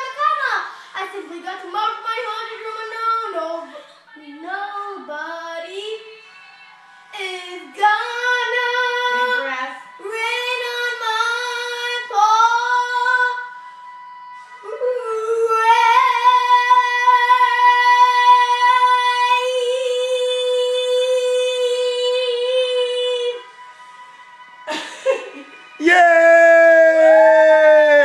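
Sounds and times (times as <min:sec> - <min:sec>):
woman singing show tune: 0:00.0 - 0:13.6.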